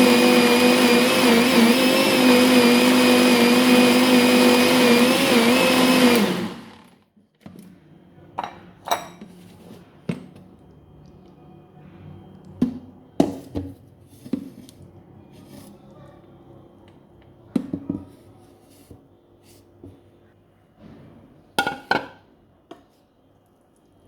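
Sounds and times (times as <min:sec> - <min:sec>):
electric mixer motor running: 0:00.0 - 0:06.9.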